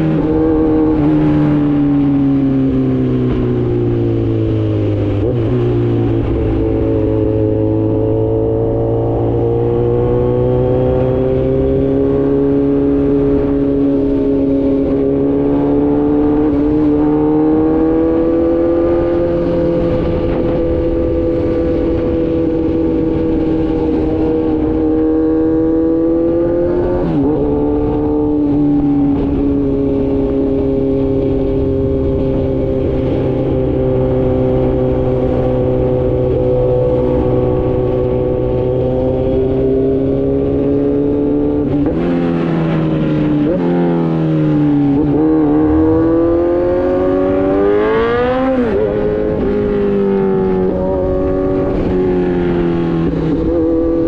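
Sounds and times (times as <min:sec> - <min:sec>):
motorcycle engine cruising: 0:00.0 - 0:54.0.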